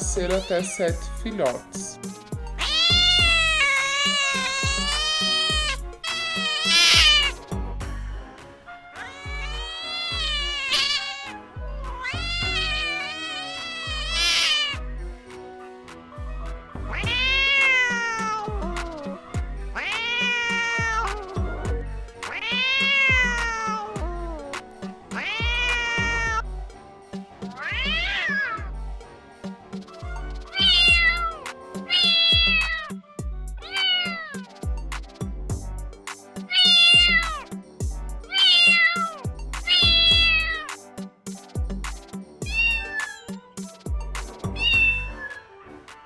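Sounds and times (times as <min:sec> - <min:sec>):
music with steady beat: 0:00.0 - 0:08.6, 0:11.5 - 0:12.9, 0:13.7 - 0:17.6, 0:18.5 - 0:20.1, 0:20.8 - 0:45.1
kitten meowing: 0:02.6 - 0:07.4, 0:08.9 - 0:14.8, 0:16.9 - 0:21.6, 0:22.3 - 0:26.4, 0:27.6 - 0:28.7, 0:30.0 - 0:32.9, 0:33.6 - 0:34.6, 0:36.5 - 0:37.5, 0:38.3 - 0:40.7, 0:42.4 - 0:43.4, 0:44.6 - 0:45.5.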